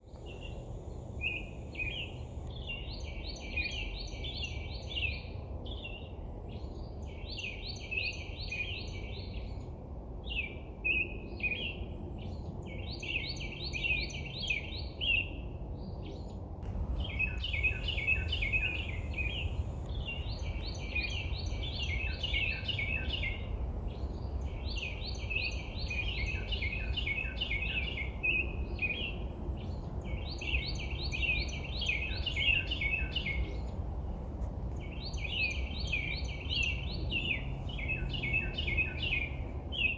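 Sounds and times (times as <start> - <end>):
songbird chirping: 0.0 - 9.7, 10.3 - 39.9
low background rumble: 15.6 - 39.9.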